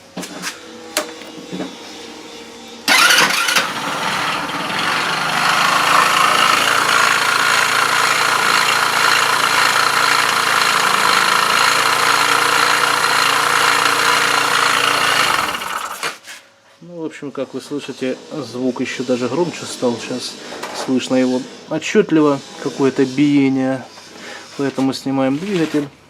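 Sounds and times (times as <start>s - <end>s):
engine running with beating knock: 2.9s - 15.9s
scooter engine starting: 2.9s - 16.2s.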